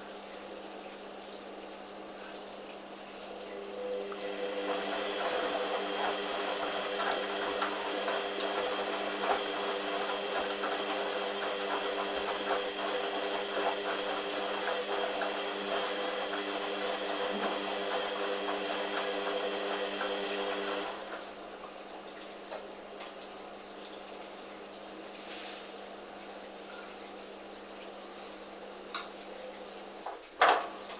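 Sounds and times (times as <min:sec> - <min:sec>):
washing machine motor hum: 0:02.8 - 0:22.0.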